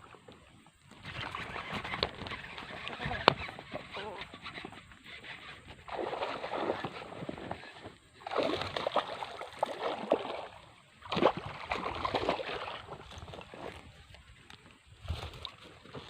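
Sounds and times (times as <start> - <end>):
water splashing and sloshing: 0.0 - 16.0.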